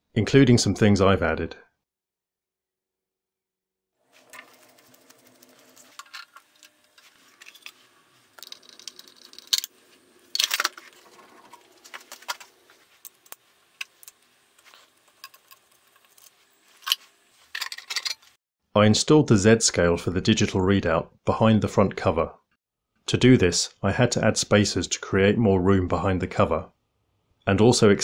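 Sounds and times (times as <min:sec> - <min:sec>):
tools and metal parts clinking: 0:08.4 - 0:09.7, 0:15.2 - 0:18.3.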